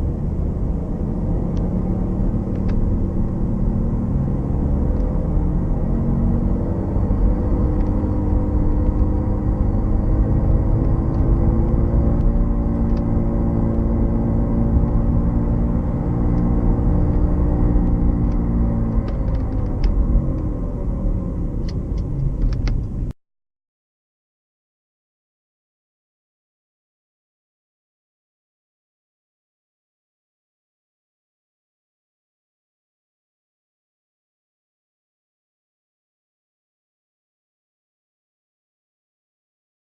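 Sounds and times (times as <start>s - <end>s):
car rumbling on the move: 0.0s - 23.2s.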